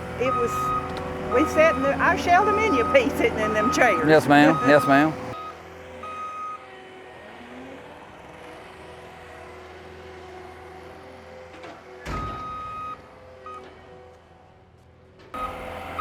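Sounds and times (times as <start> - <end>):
engine hum: 0.0 - 16.0
reversing alarm beep: 0.2 - 6.6, 12.3 - 13.7, 15.4 - 16.0.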